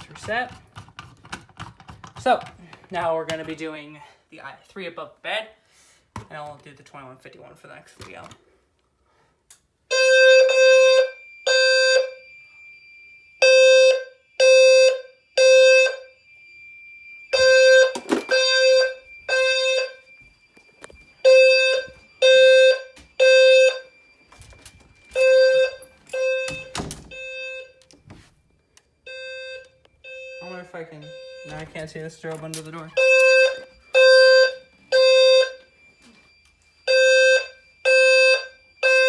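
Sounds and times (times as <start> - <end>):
fire alarm beeping: 9.8 - 39.0.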